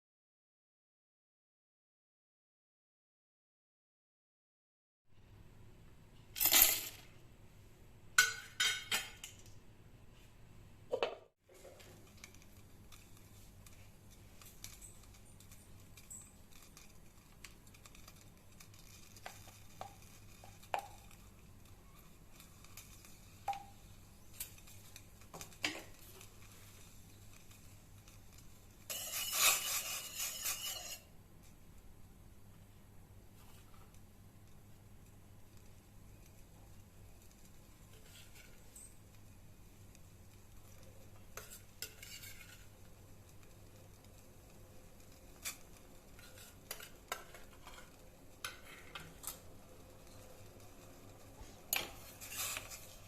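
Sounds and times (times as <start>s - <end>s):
kitchen utensils clinking: 8.2s - 9.5s, 28.9s - 31.1s.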